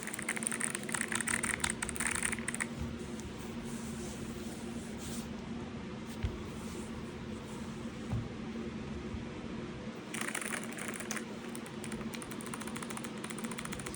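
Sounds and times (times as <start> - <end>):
mechanical keyboard keys clicking: 0.0 - 2.7, 10.2 - 13.9
steady low hum: 0.0 - 13.9
thump: 8.1 - 8.3.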